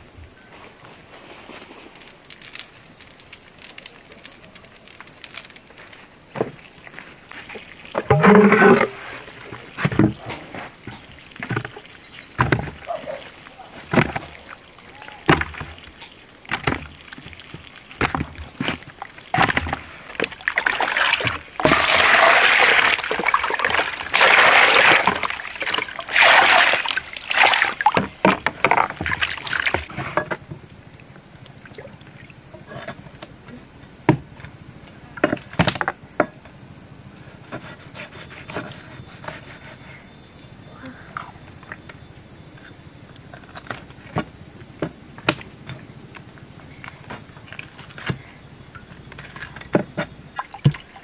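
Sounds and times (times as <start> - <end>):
water splashing and sloshing: 1.0 - 33.2, 42.6 - 51.0.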